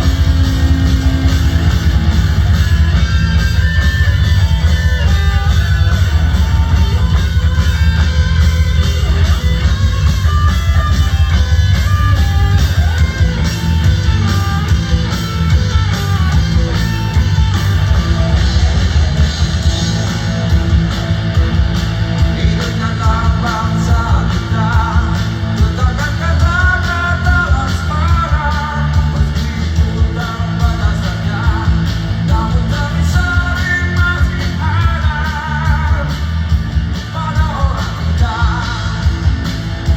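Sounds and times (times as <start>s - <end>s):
electric guitar: 0.0s - 39.9s
live rock band: 0.0s - 39.9s
person singing: 22.2s - 36.3s.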